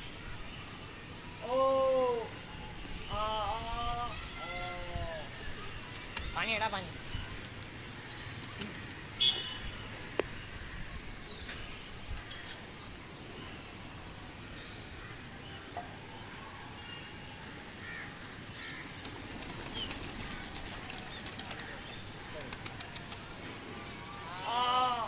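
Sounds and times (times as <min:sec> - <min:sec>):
outdoor background noise: 0:00.0 - 0:25.0
pigeon wings flapping: 0:18.8 - 0:23.4.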